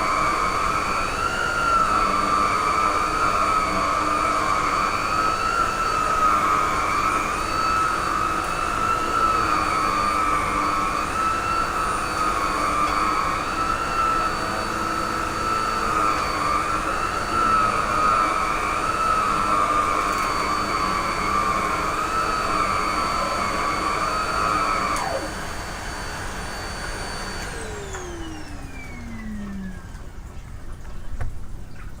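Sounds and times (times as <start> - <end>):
motor winding down: 0.0 - 30.5
vacuum cleaner whine: 0.0 - 32.0.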